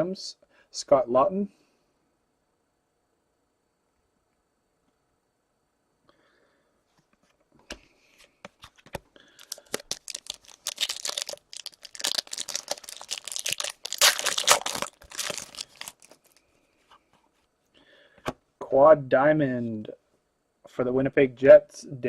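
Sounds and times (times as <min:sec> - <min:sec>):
foil wrapper tearing and crinkling: 0:09.3 - 0:16.4.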